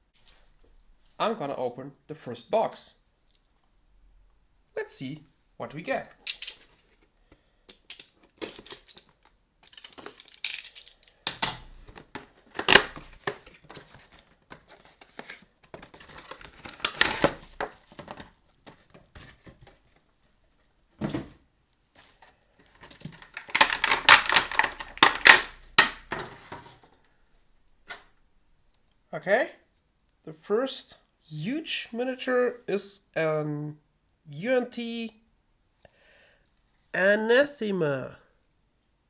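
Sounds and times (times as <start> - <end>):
plastic packaging crinkling: 7.7 - 19.9, 22.6 - 26.6.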